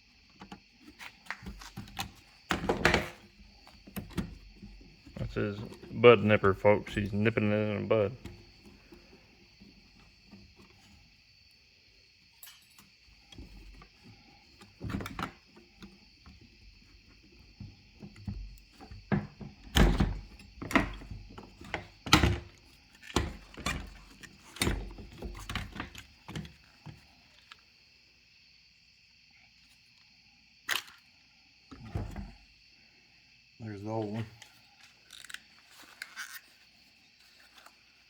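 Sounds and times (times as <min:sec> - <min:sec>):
metal tools clunking: 0:12.4 - 0:13.9.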